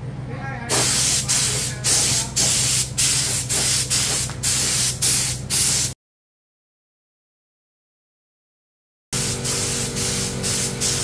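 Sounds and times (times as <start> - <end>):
steady low hum: 0.0 - 6.0, 9.2 - 11.0
pressurised spray hissing: 0.7 - 6.0, 9.2 - 11.0.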